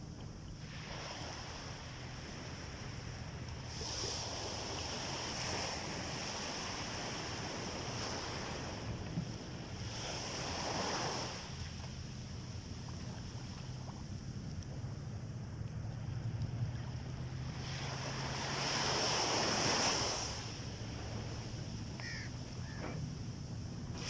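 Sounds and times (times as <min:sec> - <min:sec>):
sea waves washing onto beach: 0:00.0 - 0:24.0
wind rumble on microphone: 0:00.0 - 0:24.0.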